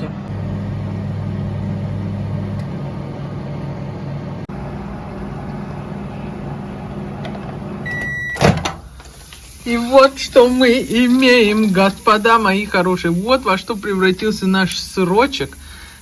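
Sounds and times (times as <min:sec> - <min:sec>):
microwave oven humming: 0:00.0 - 0:09.1.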